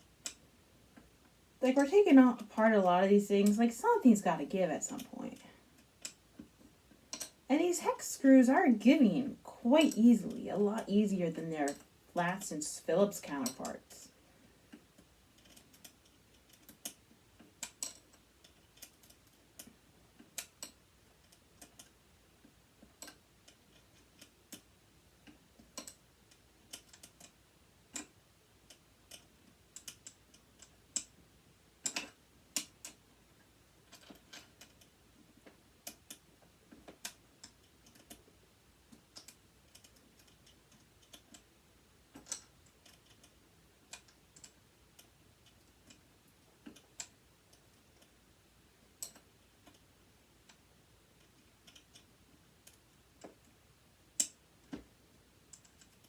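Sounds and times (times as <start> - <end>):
small metal tools clicking: 4.9 - 7.4, 11.7 - 12.4, 13.0 - 14.0, 15.0 - 22.0, 22.8 - 31.2, 31.8 - 33.0, 35.8 - 38.3, 42.1 - 48.2, 49.0 - 49.8.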